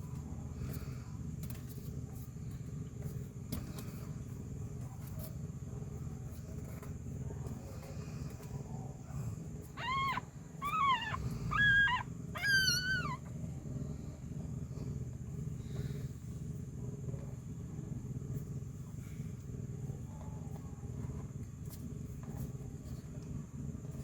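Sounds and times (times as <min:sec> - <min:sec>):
low background rumble: 0:00.0 - 0:24.0
cat meowing: 0:09.8 - 0:13.3.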